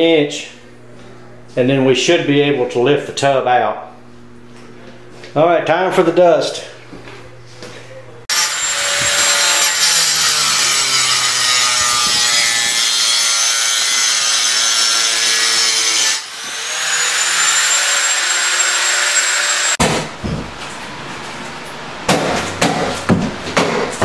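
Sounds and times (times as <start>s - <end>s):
gritty tile cutting: 8.3s - 19.8s
power tool motor whine: 14.0s - 19.8s.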